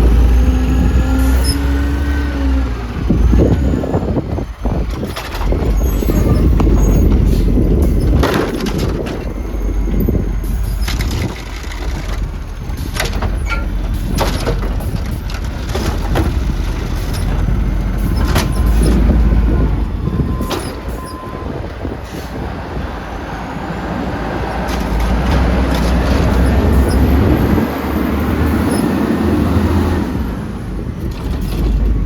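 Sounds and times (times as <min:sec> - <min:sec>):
garbage truck engine rumbling: 0:00.0 - 0:32.0
metallic clanks and knocks: 0:10.4 - 0:19.2.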